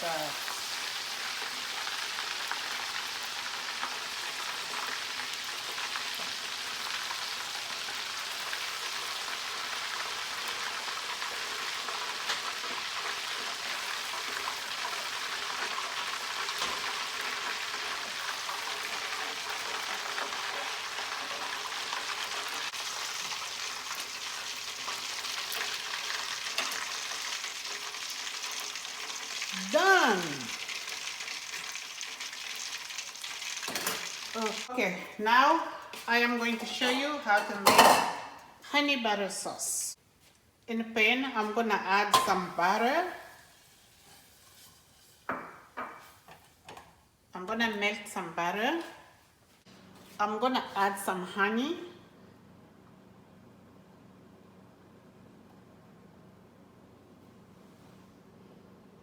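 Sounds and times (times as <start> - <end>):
chicken frying in hot oil: 0.0 - 34.7
oil crackling and popping: 0.4 - 34.7.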